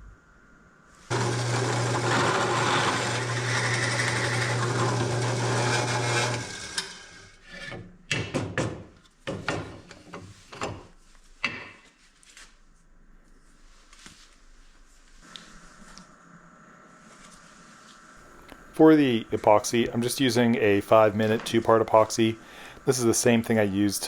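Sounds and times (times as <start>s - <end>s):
electric drill boring wood: 1.1s - 7.3s
scrapes and knocks: 3.6s - 11.9s.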